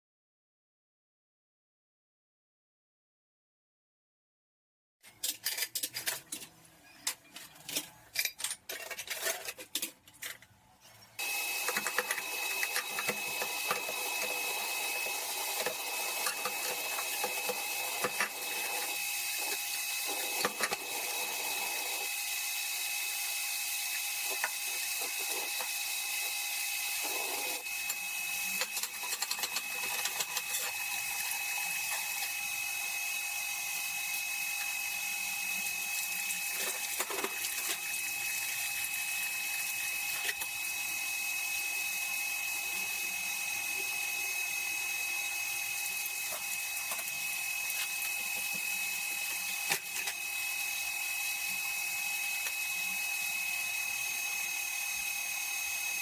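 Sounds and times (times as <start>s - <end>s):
tap running: 11.2s - 22.1s, 23.9s - 26.4s.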